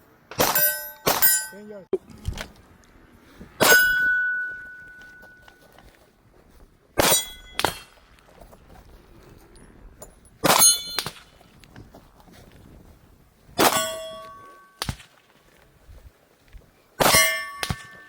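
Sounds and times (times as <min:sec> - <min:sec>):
metal plate clanging: 0:03.6 - 0:05.4, 0:10.5 - 0:11.2, 0:13.6 - 0:14.8.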